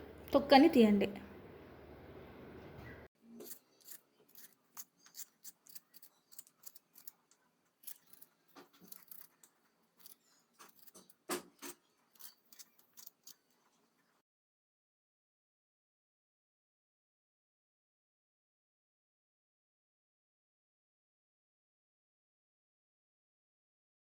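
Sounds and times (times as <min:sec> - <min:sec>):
blade scraping potato skin: 0:03.3 - 0:14.2.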